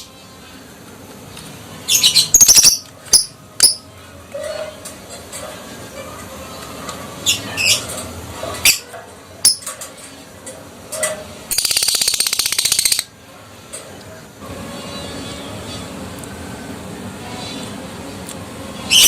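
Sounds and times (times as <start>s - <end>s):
bird rattling chatter trill: 11.5s - 13.1s.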